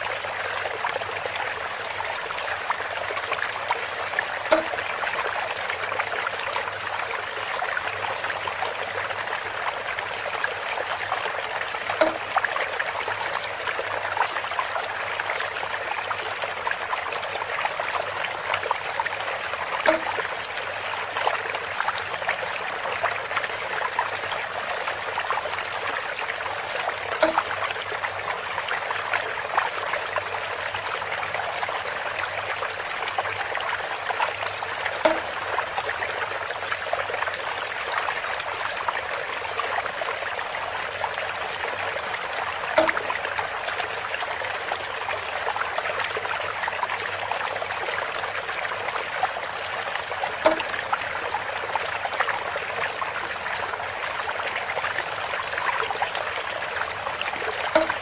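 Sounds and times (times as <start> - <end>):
water trickling through bamboo: 0.0 - 58.0
short hollow knock: 4.5 - 4.9, 12.0 - 12.4, 19.9 - 20.2, 27.2 - 27.6, 35.0 - 35.4, 42.8 - 43.2, 50.4 - 50.7, 57.7 - 58.0.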